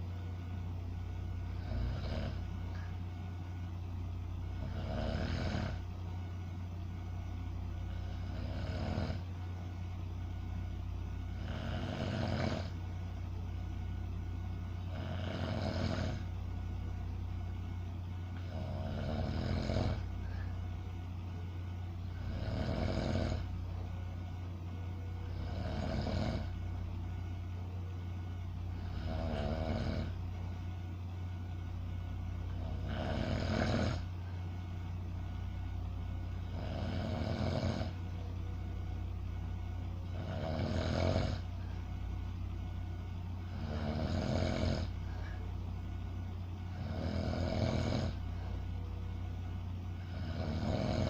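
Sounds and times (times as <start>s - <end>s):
low hum: 0.0s - 40.8s, 41.4s - 44.0s, 44.6s - 50.6s
person snoring: 1.4s - 2.9s, 4.5s - 5.8s, 7.9s - 9.4s, 11.3s - 12.8s, 14.8s - 16.4s, 18.4s - 20.5s, 22.0s - 23.7s, 25.2s - 26.6s, 28.7s - 30.2s, 32.5s - 34.1s, 36.3s - 38.1s, 40.0s - 41.6s, 43.4s - 45.4s, 46.7s - 48.6s, 50.0s - 51.0s.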